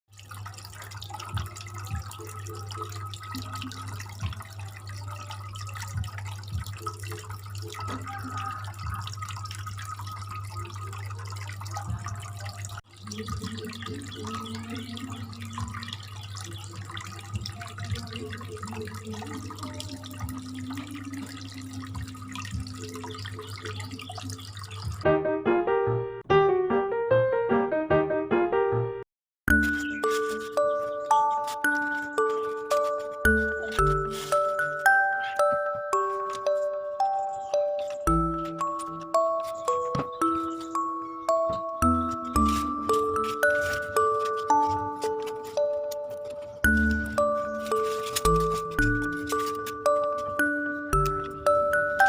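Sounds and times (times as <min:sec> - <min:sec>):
fountain water trickling: 0:00.1 - 0:25.1, 0:29.5 - 0:52.0
tinkling music melody: 0:01.0 - 0:12.5, 0:29.5 - 0:52.0.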